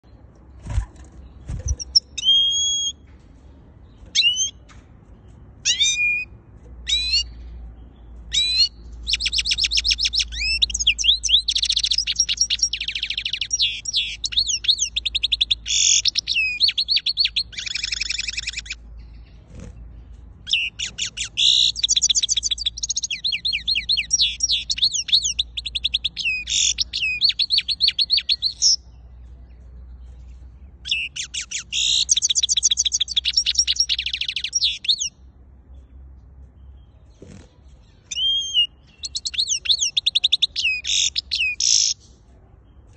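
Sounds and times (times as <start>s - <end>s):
goldfinch twittering song: 0.6s - 3.0s, 3.8s - 42.1s.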